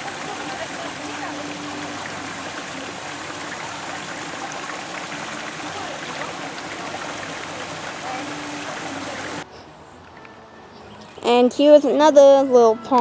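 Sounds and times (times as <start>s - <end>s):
stream water rushing: 0.0s - 9.5s.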